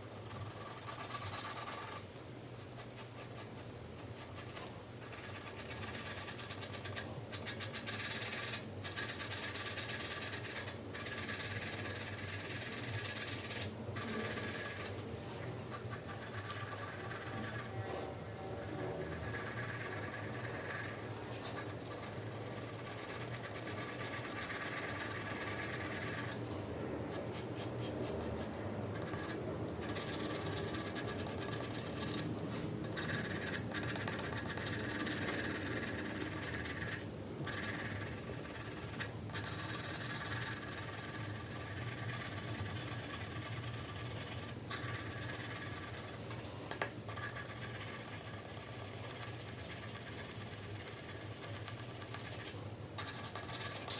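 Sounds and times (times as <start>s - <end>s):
pencil shading on paper: 0.2s - 2.0s, 5.1s - 14.9s, 15.8s - 17.8s, 18.5s - 26.4s, 29.0s - 32.2s, 32.9s - 46.2s, 47.1s - 53.9s.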